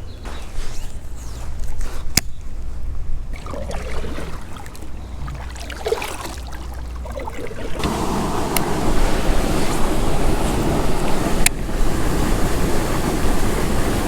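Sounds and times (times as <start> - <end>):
water around kayak: 0.1 - 14.0
rushing water and wind: 2.9 - 14.0
wind rumbling on microphone: 6.5 - 14.0.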